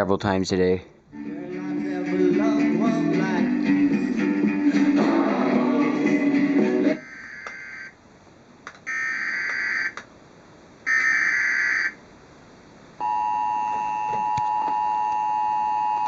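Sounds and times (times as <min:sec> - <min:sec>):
two-tone attention signal: 0:13.0 - 0:16.0.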